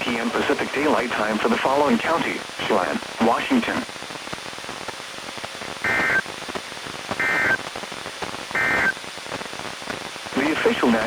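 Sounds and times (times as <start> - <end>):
receiver hiss: 0.0 - 11.0
warbling two-tone data bursts: 5.9 - 6.2, 7.2 - 7.6, 8.6 - 8.9.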